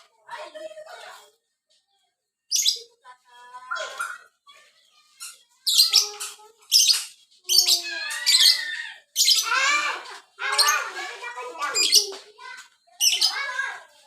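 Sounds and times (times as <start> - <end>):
bird chirping and squawking: 2.5 - 3.0, 3.6 - 12.2, 13.0 - 13.6.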